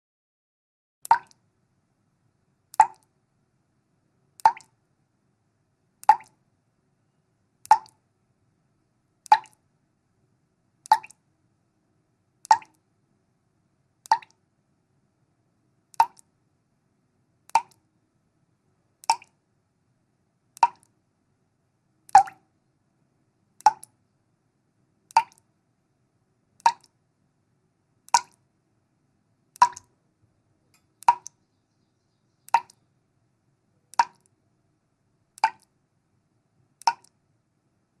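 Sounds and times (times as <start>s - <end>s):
water drops plopping: 1.0s - 1.4s, 2.8s - 3.0s, 4.4s - 4.7s, 6.0s - 6.4s, 7.7s - 8.0s, 9.3s - 9.6s, 10.9s - 11.2s, 12.5s - 12.8s, 14.1s - 14.4s, 16.0s - 16.2s, 17.5s - 17.8s, 19.0s - 19.3s, 20.6s - 20.9s, 22.1s - 22.4s, 23.6s - 23.9s, 25.1s - 25.4s, 26.6s - 26.9s, 28.1s - 28.4s, 29.6s - 29.9s, 31.0s - 31.4s, 32.5s - 32.8s, 34.0s - 34.3s, 35.4s - 35.7s, 36.8s - 37.2s.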